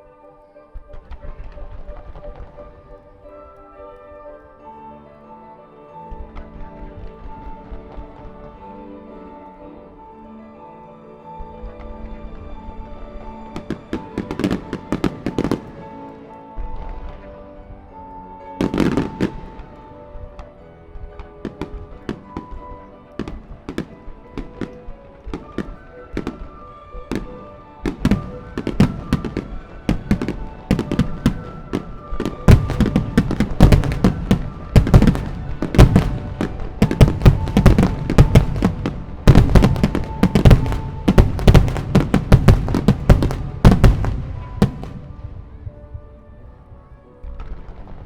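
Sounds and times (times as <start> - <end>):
music playing: 0.0 - 48.0
fireworks bursting: 12.1 - 17.3, 18.5 - 46.0.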